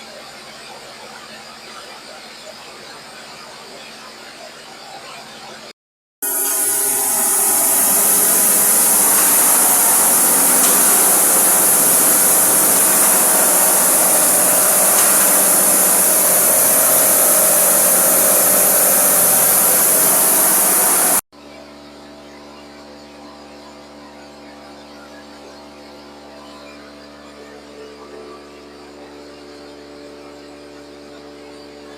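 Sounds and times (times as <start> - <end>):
milling machine running: 6.2 - 21.2.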